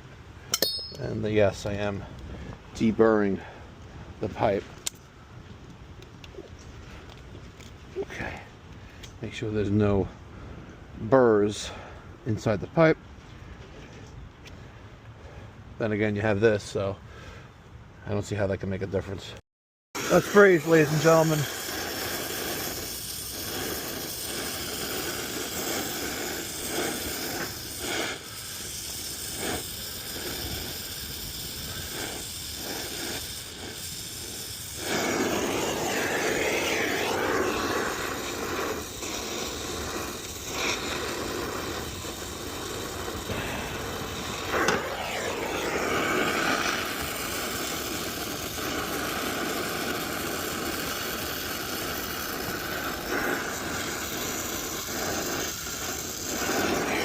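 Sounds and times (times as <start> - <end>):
torch flame hissing: 20.0 - 57.0.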